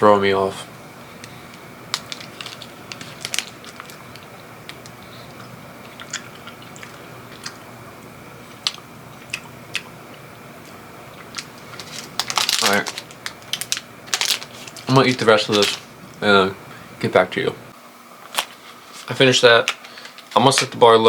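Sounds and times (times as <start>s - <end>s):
soft mouth clicks and crunches: 1.2s - 7.7s, 8.5s - 13.8s
person chewing: 1.2s - 14.9s.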